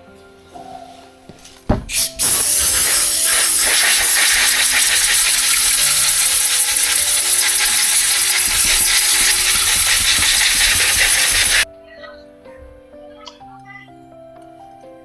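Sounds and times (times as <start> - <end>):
two-stroke chainsaw engine running: 2.6 - 11.6.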